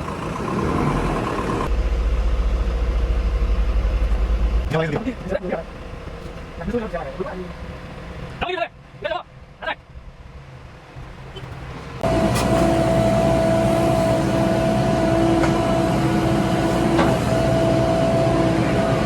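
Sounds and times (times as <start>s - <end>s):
diesel engine of earthmoving machinery: 0.0s - 19.0s
held whine: 11.0s - 19.0s.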